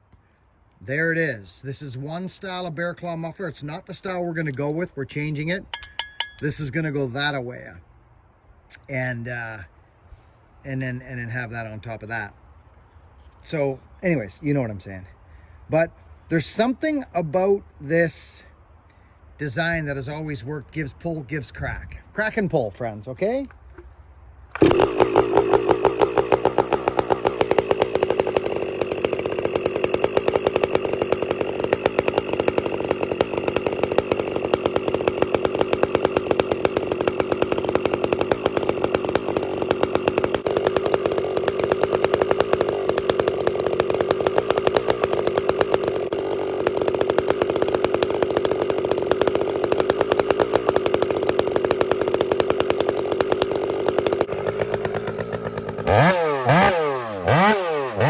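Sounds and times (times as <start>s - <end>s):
chainsaw at full throttle cutting: 2.0s - 7.4s, 24.6s - 58.0s.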